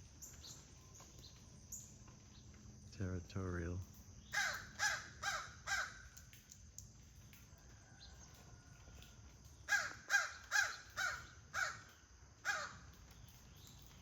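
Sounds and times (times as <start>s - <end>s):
crow cawing: 4.3s - 6.2s, 9.7s - 12.9s.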